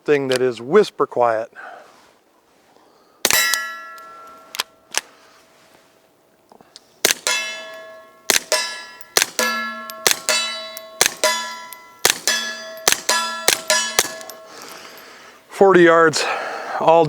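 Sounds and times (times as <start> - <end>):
bullet clanging on steel target: 3.3 - 4.5, 7.1 - 15.1
suppressed pistol shots: 7.0 - 14.5.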